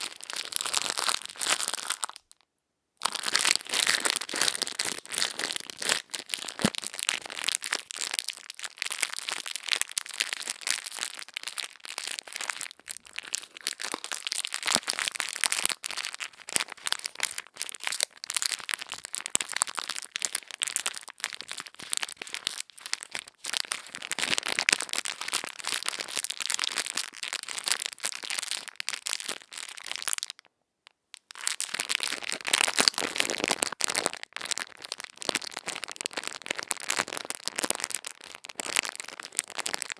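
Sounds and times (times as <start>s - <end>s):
crackling and scratching at microphone: 0.0s - 2.2s, 3.1s - 30.0s.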